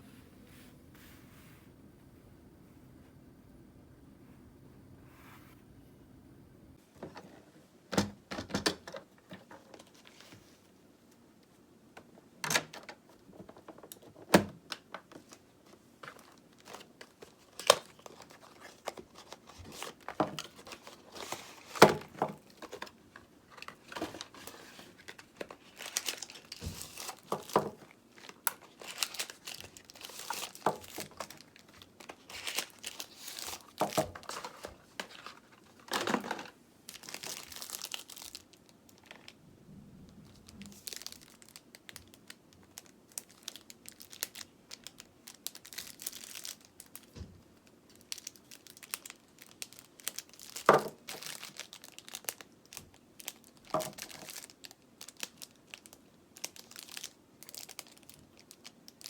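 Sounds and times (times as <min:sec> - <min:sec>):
plastic packaging crinkling: 0:13.3 - 0:39.4, 0:40.4 - 0:59.0.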